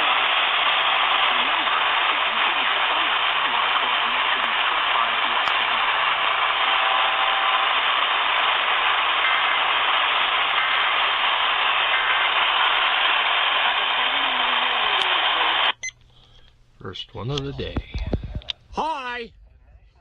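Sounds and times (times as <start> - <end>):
radio static hiss: 0.0 - 15.8
faint radio programme audio: 0.0 - 20.0.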